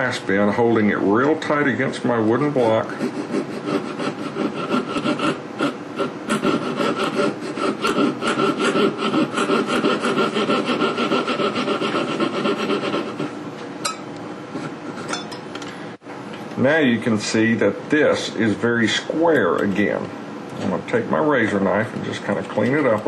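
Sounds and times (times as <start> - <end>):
saw blade rasping on metal: 2.6 - 13.3.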